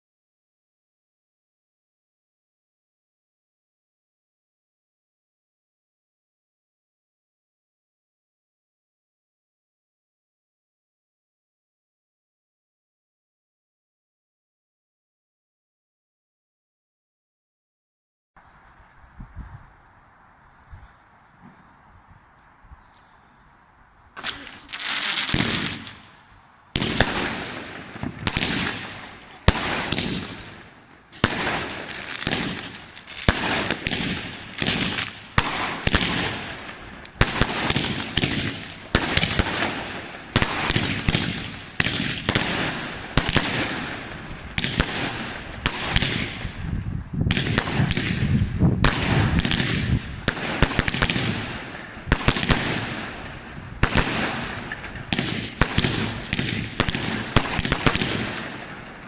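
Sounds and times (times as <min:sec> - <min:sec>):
fireworks banging and crackling: 0:24.0 - 0:59.0.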